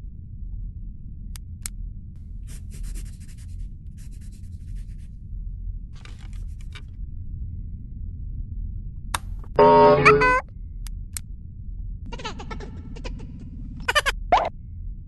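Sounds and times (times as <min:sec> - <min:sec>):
low steady rumble: 0:00.0 - 0:02.8, 0:03.4 - 0:15.0.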